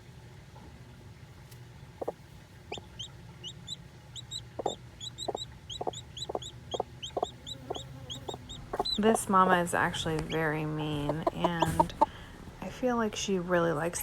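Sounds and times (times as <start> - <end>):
chick peeping: 2.0 - 12.1
hen clucking: 2.0 - 12.4.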